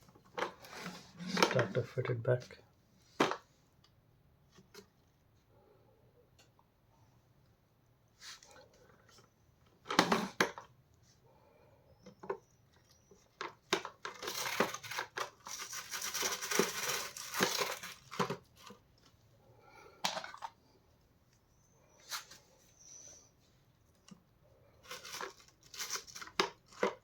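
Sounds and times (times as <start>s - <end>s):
plastic scraping and rubbing: 0.1s - 2.0s, 13.2s - 18.8s.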